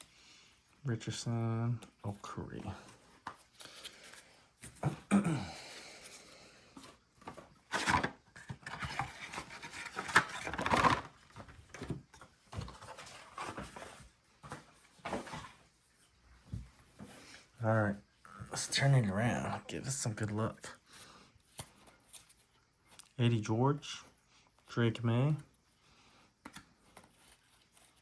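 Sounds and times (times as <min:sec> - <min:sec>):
packaging rustling and tearing: 0:07.7 - 0:11.5.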